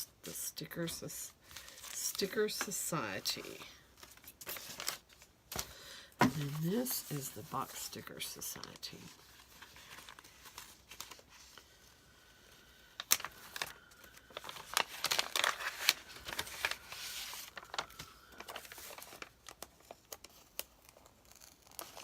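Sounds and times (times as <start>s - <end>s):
plastic bag crinkling: 13.0s - 20.2s.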